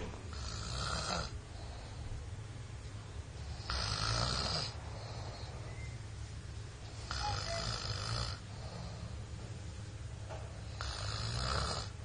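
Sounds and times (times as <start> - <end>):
person snoring loudly: 0.3 - 1.3, 3.6 - 4.8, 7.1 - 8.4, 10.8 - 11.9.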